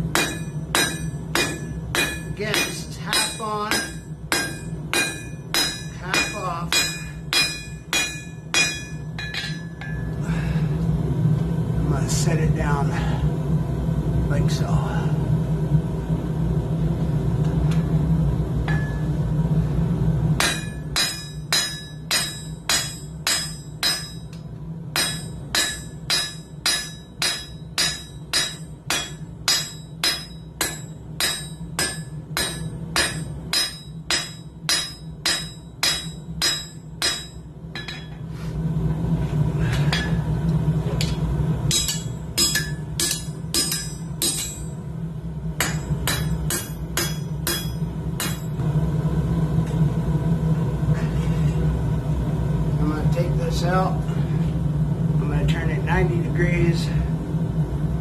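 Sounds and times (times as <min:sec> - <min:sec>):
steady low hum: 0:00.0 - 0:58.0
hammer striking steel on anvil: 0:00.1 - 0:10.2, 0:18.6 - 0:19.1, 0:20.4 - 0:38.2, 0:39.8 - 0:40.3, 0:41.0 - 0:44.8, 0:45.6 - 0:48.6.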